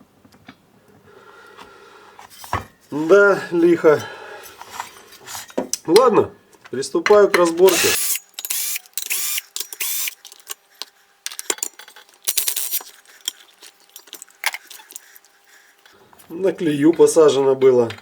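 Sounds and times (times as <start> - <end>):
metal parts clinking: 7.6 - 15.9
rasping bursts: 7.7 - 10.6.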